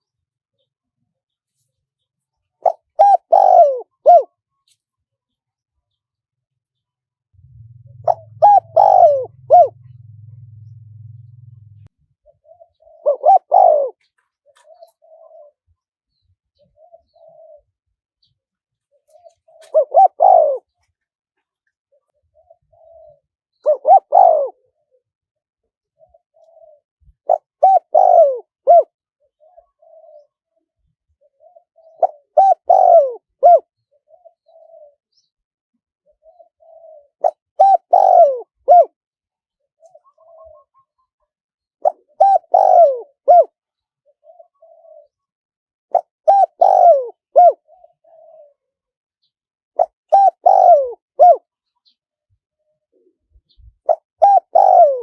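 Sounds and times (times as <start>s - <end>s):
dove cooing: 2.6s - 4.7s, 7.3s - 18.3s, 18.9s - 20.9s, 21.9s - 25.1s, 25.9s - 35.3s, 36.0s - 39.0s, 39.7s - 45.3s, 45.9s - 48.8s, 49.8s - 52.0s, 52.8s - 55.0s.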